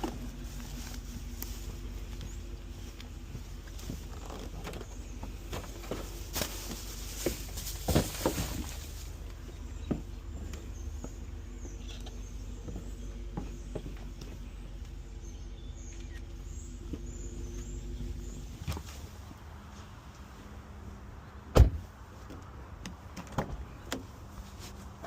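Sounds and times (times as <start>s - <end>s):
car hum and rumble from inside: 0.0s - 25.0s.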